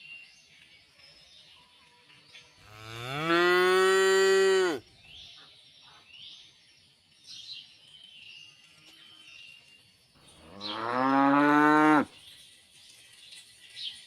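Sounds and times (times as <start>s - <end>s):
cow mooing: 2.8s - 4.8s, 10.4s - 12.1s.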